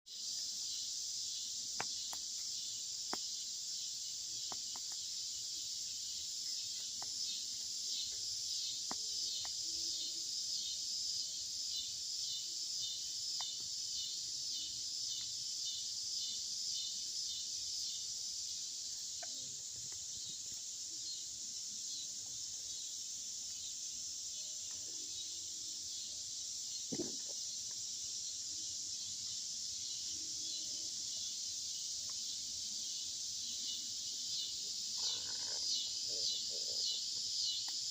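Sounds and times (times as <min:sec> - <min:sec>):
insects chirring: 0:00.1 - 0:37.9
campfire popping: 0:04.4 - 0:05.1, 0:26.9 - 0:27.8.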